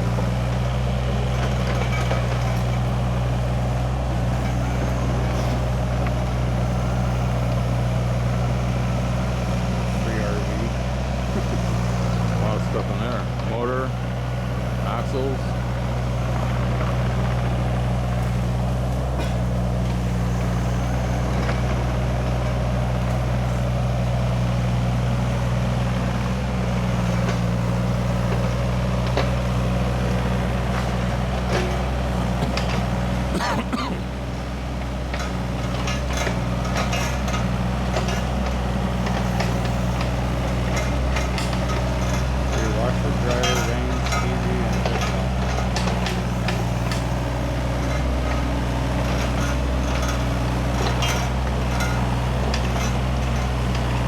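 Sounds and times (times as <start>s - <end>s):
excavator diesel engine running: 0.0s - 54.0s
metallic clanks: 35.1s - 54.0s.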